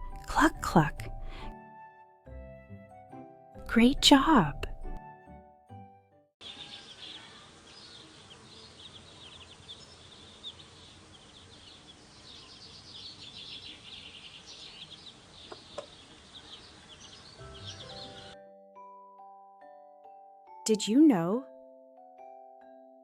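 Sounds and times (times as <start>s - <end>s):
faint outdoor hiss: 6.4s - 18.3s
small birds chirping: 6.4s - 18.4s.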